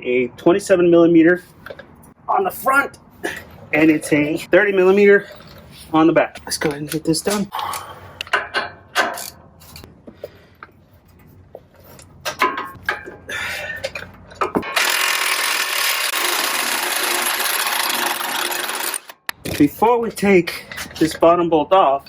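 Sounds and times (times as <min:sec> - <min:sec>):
metal tools clinking: 0:05.2 - 0:05.8, 0:20.5 - 0:21.2
power tool running loudly: 0:14.8 - 0:19.1.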